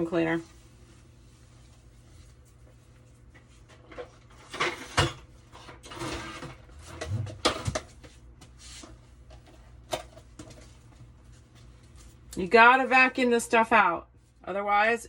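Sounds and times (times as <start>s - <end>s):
knocks and clunks of hard objects: 6.3s - 8.0s.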